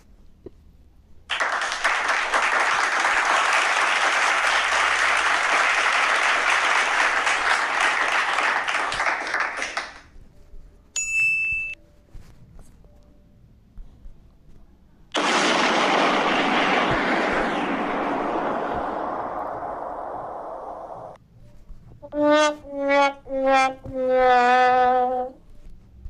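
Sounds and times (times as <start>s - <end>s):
audience applauding: 1.3s - 10.1s.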